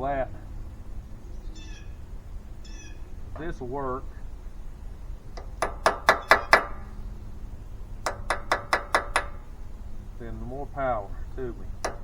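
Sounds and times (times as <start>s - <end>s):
small hammer tapping on metal: 5.4s - 7.0s, 8.0s - 9.6s, 11.8s - 12.0s.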